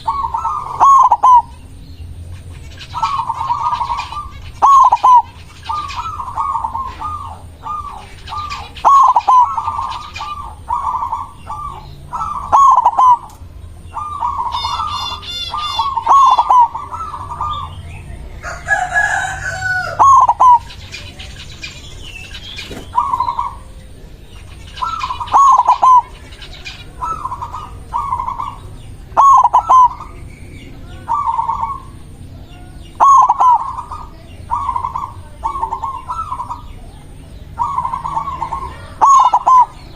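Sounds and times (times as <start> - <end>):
small bird chirping: 0.0 - 18.6, 19.2 - 39.9
dove cooing: 0.0 - 39.9
rooster crowing: 14.3 - 17.6, 18.2 - 20.7.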